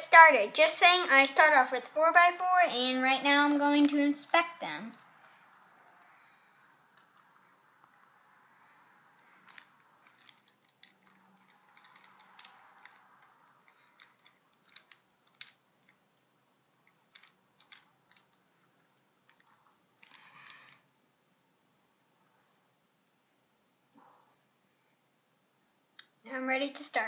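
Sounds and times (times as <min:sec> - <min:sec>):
plastic cubes clicking: 0:09.4 - 0:20.7.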